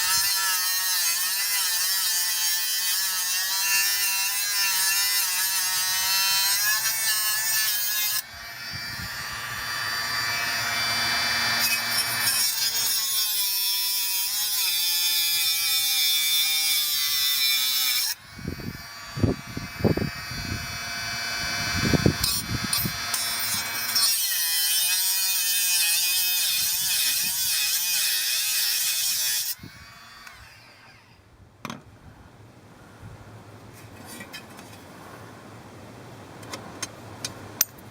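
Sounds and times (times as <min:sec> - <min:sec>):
harsh grinding bursts: 0:00.0 - 0:31.2
angle grinder whining: 0:05.3 - 0:13.5, 0:17.3 - 0:31.2.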